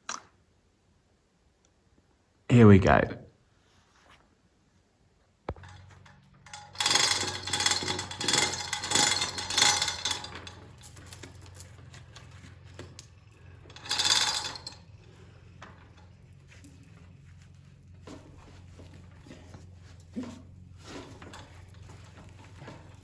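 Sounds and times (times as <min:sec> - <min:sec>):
beam rattling and scraping: 0:05.5 - 0:23.0
winch motor humming: 0:05.5 - 0:23.0.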